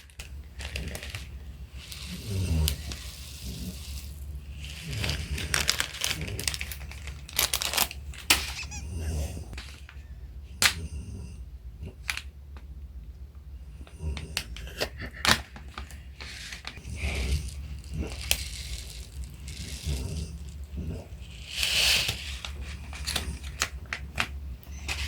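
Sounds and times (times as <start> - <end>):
clicks and crinkling of slime: 0.0 - 3.1, 4.6 - 8.6.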